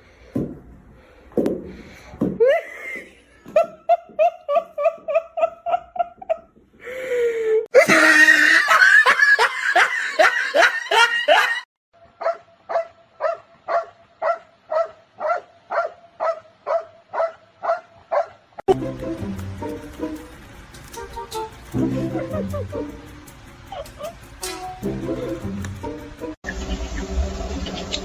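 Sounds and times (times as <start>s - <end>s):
high-pitched laughing: 7.7s - 11.7s, 21.9s - 23.0s, 23.7s - 24.3s.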